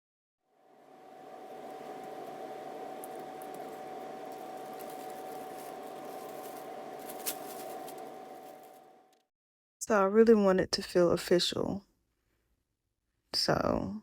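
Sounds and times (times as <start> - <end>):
mechanical hum with steady tone: 0.5 - 9.2.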